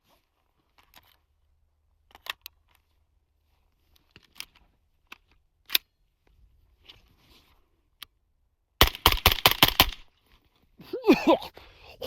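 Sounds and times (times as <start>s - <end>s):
sharp clicks of rifle parts: 2.0s - 2.9s, 3.9s - 6.0s, 8.8s - 10.2s.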